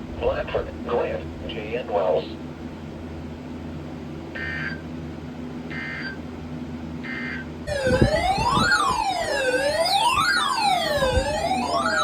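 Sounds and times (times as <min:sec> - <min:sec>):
low radio hum: 0:00.0 - 0:02.5
digital data tone bursts: 0:04.4 - 0:04.8, 0:05.7 - 0:06.2
siren-like wail: 0:05.7 - 0:06.2, 0:07.1 - 0:12.0.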